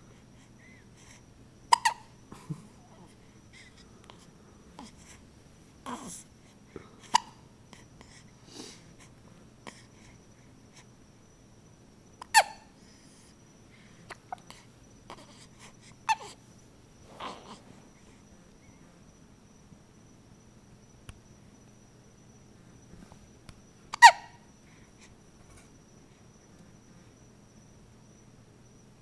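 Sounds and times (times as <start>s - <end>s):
baby breathing softly: 0.0s - 1.4s, 2.3s - 11.0s, 12.7s - 18.8s
baby hiccuping: 1.7s - 2.1s, 7.0s - 7.4s, 12.3s - 12.6s, 17.2s - 17.6s, 23.9s - 24.3s.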